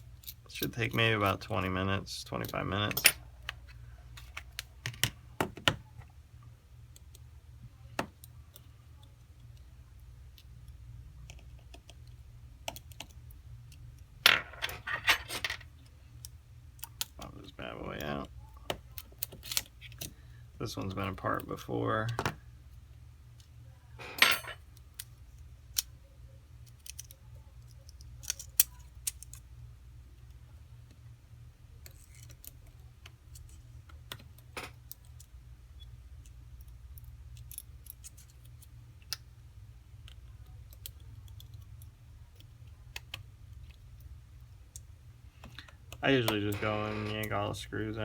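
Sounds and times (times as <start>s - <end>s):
small clicks of metal tools: 26.6s - 29.4s
phone parts clacking: 46.1s - 47.4s.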